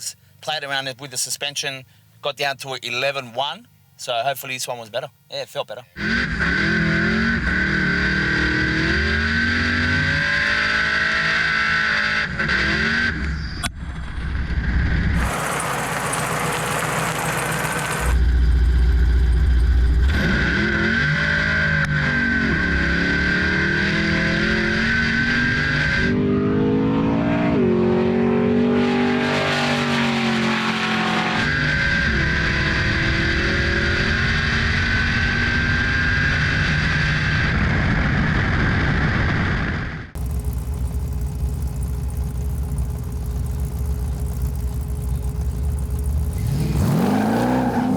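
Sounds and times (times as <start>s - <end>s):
supercharged race car engine revving: 6.0s - 13.4s, 14.9s - 18.4s, 20.0s - 37.6s, 40.2s - 47.9s
supercharger whine: 6.0s - 47.9s.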